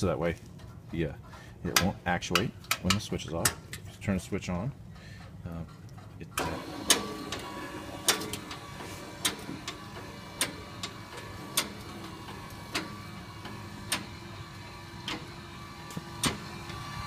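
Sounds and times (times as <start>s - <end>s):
mower engine running: 6.4s - 17.0s.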